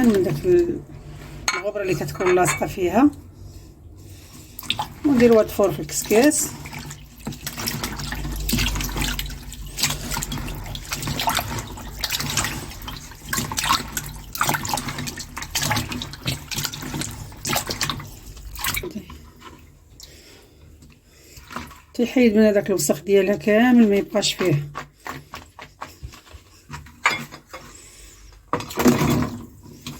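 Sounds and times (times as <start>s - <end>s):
tap water running into sink: 4.6s - 18.8s
knocks and splashes: 4.6s - 19.8s, 28.5s - 29.9s.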